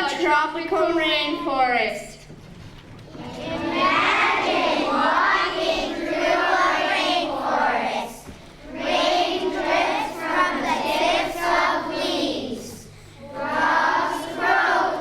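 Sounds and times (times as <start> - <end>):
children singing together: 3.1 - 15.0.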